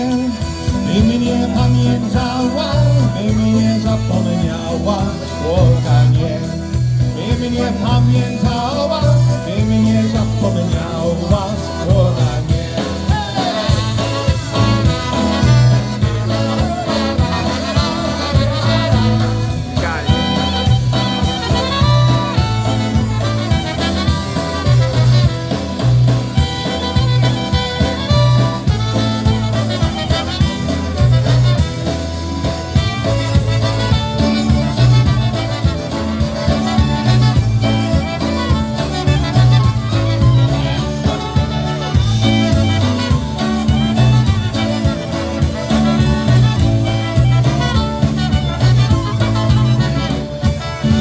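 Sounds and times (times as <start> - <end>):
polka band playing: 0.0 - 51.0
pulsing bass beat: 0.0 - 51.0.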